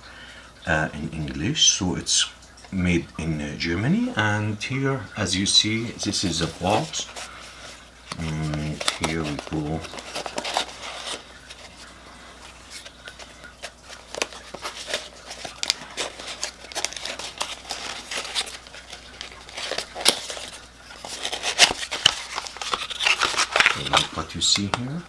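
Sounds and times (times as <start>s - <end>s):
packaging rustling and crinkling: 5.2s - 25.0s.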